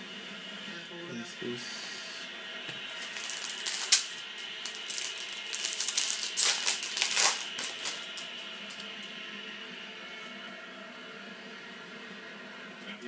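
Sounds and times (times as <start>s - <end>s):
cards crackling and rustling: 3.0s - 8.9s.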